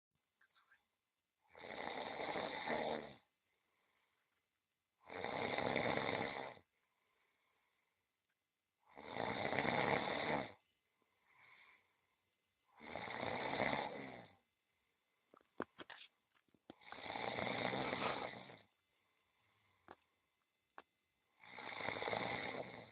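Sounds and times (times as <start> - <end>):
cat snoring: 1.4 - 3.3, 5.0 - 6.6, 8.8 - 10.6, 12.7 - 14.4, 16.8 - 18.7, 21.4 - 22.9.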